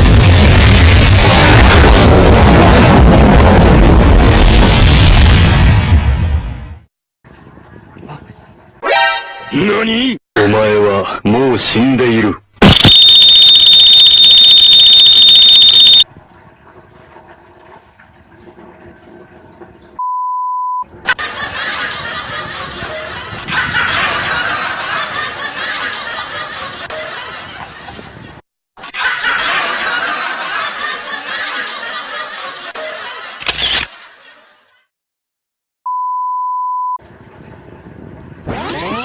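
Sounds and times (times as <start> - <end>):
censor beep: 12.7 - 16.0, 20.0 - 20.8, 35.9 - 37.0.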